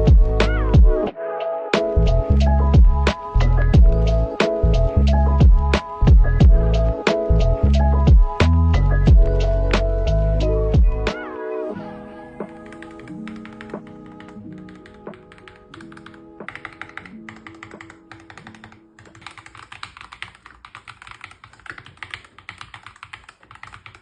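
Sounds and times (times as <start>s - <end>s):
light background music: 0.0s - 20.3s
mechanical keyboard typing: 12.6s - 24.0s.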